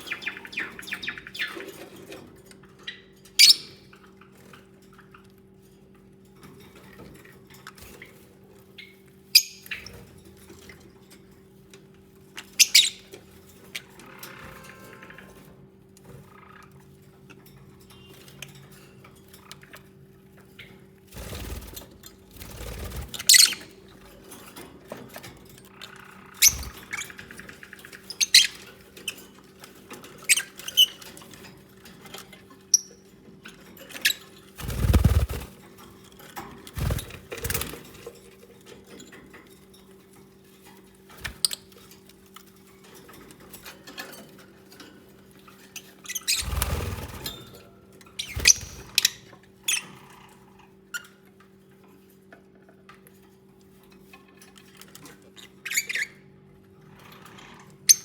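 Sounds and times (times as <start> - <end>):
lovebirds squeaking and chirping: 0.0 - 1.8, 2.9 - 3.8, 8.8 - 10.0, 12.4 - 13.1, 23.2 - 23.7, 25.9 - 29.3, 30.2 - 31.0, 34.0 - 35.5, 36.8 - 37.6, 45.8 - 47.0, 48.2 - 50.2, 55.4 - 56.2
steady low hum: 34.6 - 35.6.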